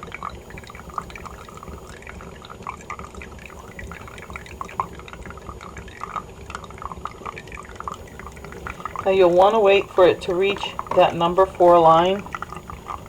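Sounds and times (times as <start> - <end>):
espresso dripping into carafe: 0.0 - 13.0
espresso machine rumbling: 0.5 - 2.0, 3.4 - 5.3, 7.9 - 13.0.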